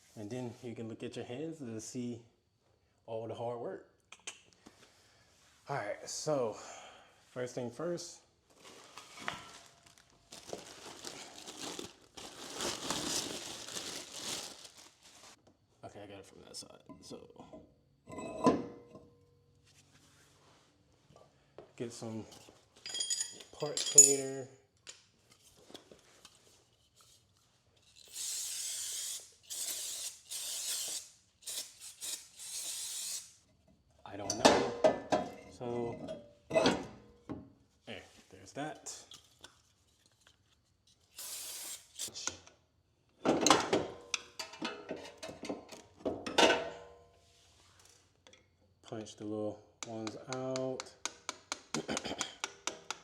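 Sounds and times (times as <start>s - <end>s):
crinkling rustling handling noise: 8.4s - 15.4s.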